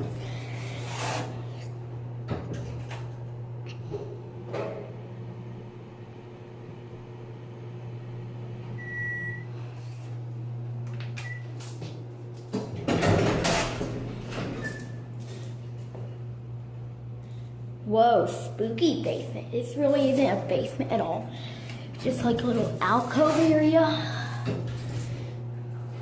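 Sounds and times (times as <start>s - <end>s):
elevator humming: 0.0s - 26.0s
elevator doors sliding open: 12.6s - 15.4s.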